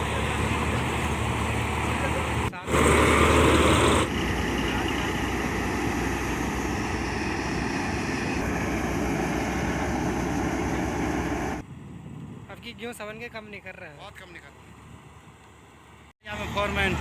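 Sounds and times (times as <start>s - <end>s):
combine harvester engine hum: 0.0s - 12.6s, 13.7s - 17.0s.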